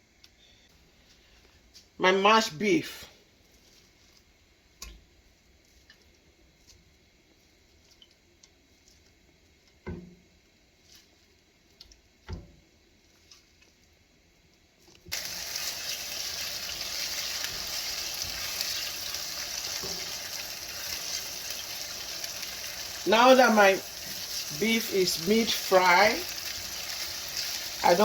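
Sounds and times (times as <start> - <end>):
meat sizzling in a pan: 15.1 - 28.0.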